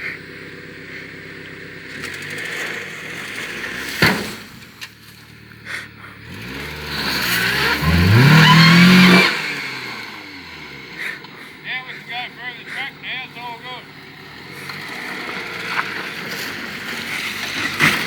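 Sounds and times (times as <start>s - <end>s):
engine knock: 0.0s - 4.4s
car engine revving: 0.0s - 18.0s.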